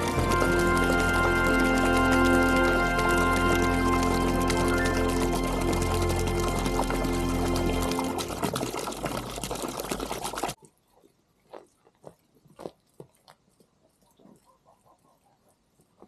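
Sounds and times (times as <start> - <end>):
background music: 0.0 - 8.4.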